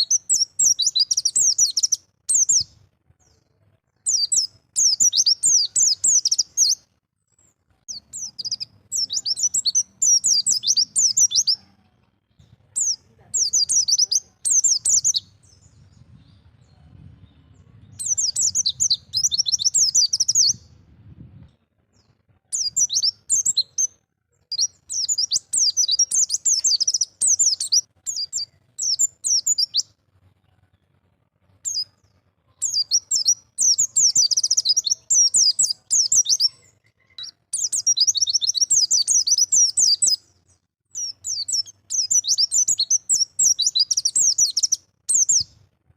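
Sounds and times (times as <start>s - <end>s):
bird twittering song: 0.0s - 11.7s, 12.3s - 30.0s, 31.6s - 45.6s.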